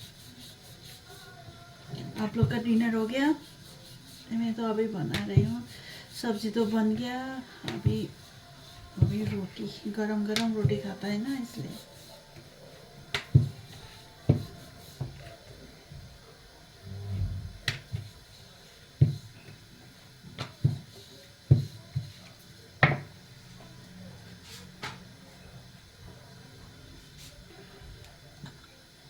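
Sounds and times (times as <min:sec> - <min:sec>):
knocks and thuds of kitchen work: 0:01.9 - 0:02.8, 0:05.0 - 0:05.8, 0:07.0 - 0:08.2, 0:08.8 - 0:09.6, 0:10.4 - 0:11.0, 0:13.1 - 0:15.3, 0:19.0 - 0:19.6, 0:20.3 - 0:20.9, 0:21.5 - 0:22.2, 0:22.8 - 0:23.2
short low rumble: 0:16.8 - 0:17.6.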